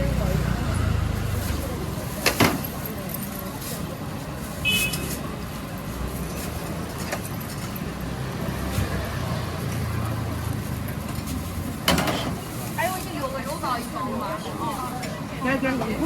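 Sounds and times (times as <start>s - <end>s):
low rumble of street traffic: 0.0s - 16.0s
market bustle: 0.0s - 16.0s.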